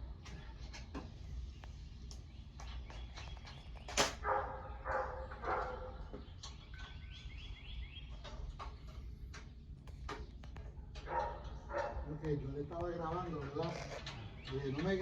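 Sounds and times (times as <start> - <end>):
dog barking and yipping: 4.2 - 6.0, 11.0 - 12.1.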